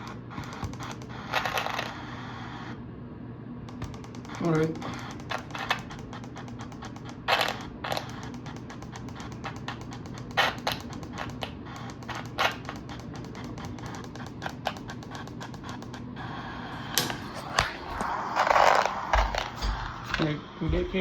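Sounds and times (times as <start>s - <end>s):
rapid clicking and tapping: 0.0s - 1.9s, 3.7s - 16.2s
faint steady hum: 0.0s - 21.0s.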